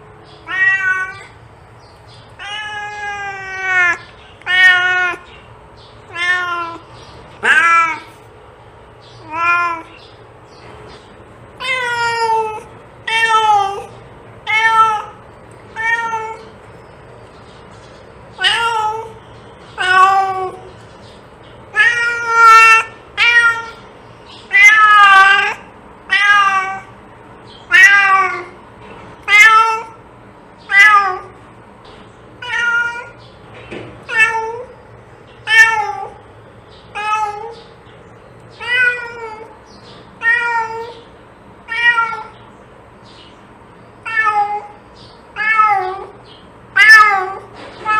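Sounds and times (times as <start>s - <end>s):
cat meowing: 0.4s - 1.4s, 2.4s - 5.3s, 6.1s - 8.1s, 9.2s - 10.0s, 11.6s - 16.5s, 18.4s - 19.2s, 19.8s - 20.7s, 21.7s - 23.8s, 24.5s - 26.9s, 27.6s - 28.6s, 29.2s - 30.0s, 30.6s - 31.4s, 32.4s - 33.2s, 34.0s - 34.7s, 35.4s - 36.2s, 36.9s - 37.7s, 38.6s - 39.6s, 40.2s - 42.4s, 44.0s - 47.9s.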